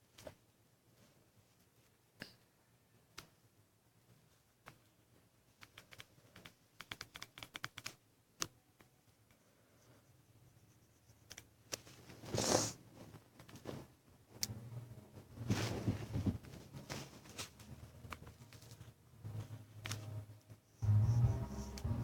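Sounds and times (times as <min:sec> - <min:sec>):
short rustling: 0:15.4 - 0:18.9.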